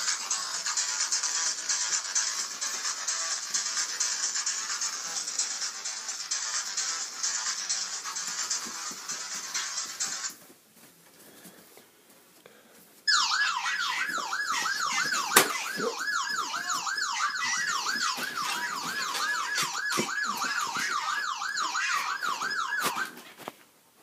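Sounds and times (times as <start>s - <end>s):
electronic siren ringtone: 13.1s - 23.2s.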